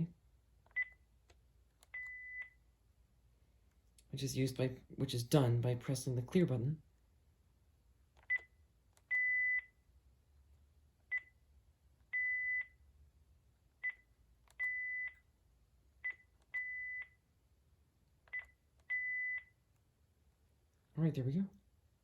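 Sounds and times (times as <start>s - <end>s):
phone handset beeps: 1.9s - 2.6s, 9.1s - 9.8s, 12.1s - 12.8s, 14.6s - 15.2s, 16.0s - 17.2s, 18.3s - 19.6s.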